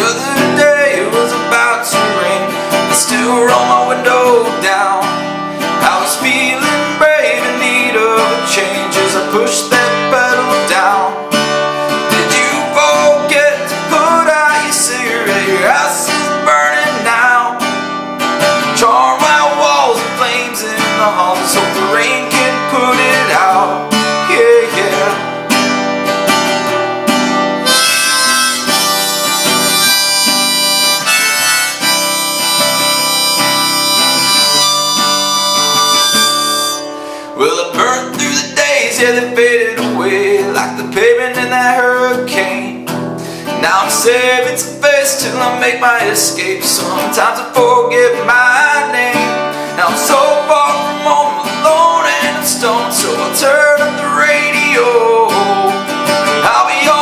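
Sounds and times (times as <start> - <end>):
strummed acoustic guitar: 0.0 - 57.0
harmonica melody: 22.8 - 37.3.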